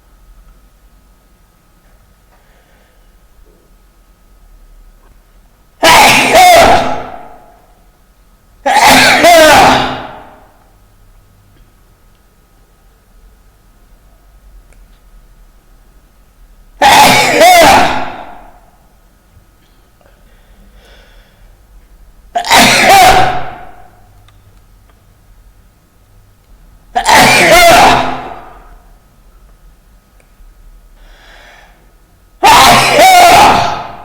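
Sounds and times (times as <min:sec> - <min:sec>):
faint in-breath: 0:02.3 - 0:03.2, 0:19.7 - 0:21.6, 0:31.0 - 0:31.9
person sneezing: 0:08.7 - 0:10.2, 0:16.8 - 0:18.2, 0:22.4 - 0:23.6, 0:27.0 - 0:28.2.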